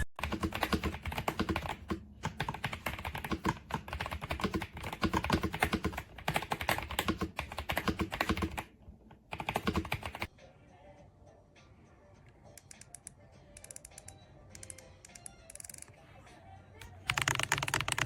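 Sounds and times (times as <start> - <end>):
fast typing on mechanical keyboard: 0.2 - 8.7, 9.3 - 10.3, 17.1 - 18.0.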